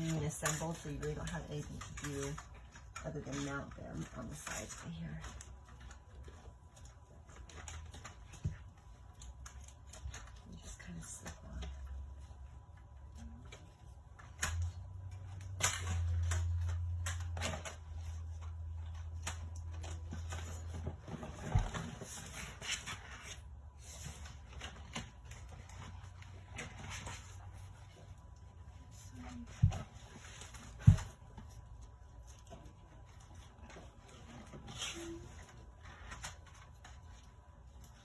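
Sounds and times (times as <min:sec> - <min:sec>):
low steady hum: 0:00.0 - 0:38.0.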